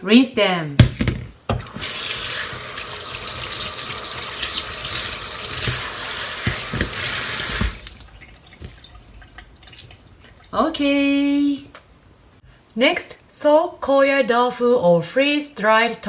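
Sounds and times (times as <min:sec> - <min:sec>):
faucet running into a sink: 0:01.7 - 0:10.0
tap shutting off: 0:05.6 - 0:07.9.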